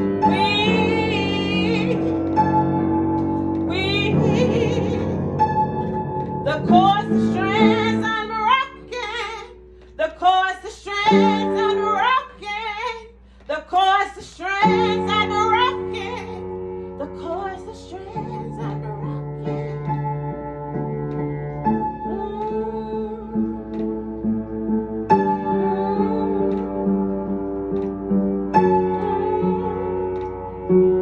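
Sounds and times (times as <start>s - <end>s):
held chords: 14.5s - 31.0s.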